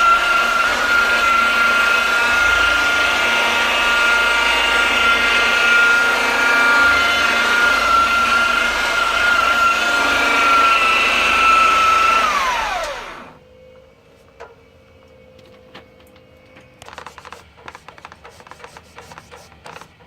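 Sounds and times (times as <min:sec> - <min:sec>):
power tool motor whine: 0:00.0 - 0:13.8.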